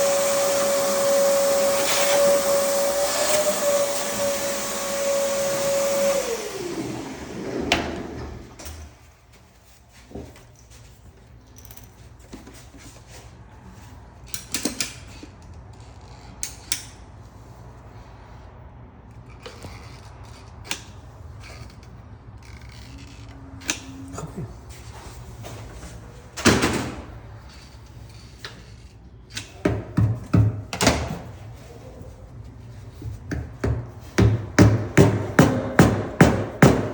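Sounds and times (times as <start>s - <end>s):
vacuum cleaner whine: 0.0s - 8.8s.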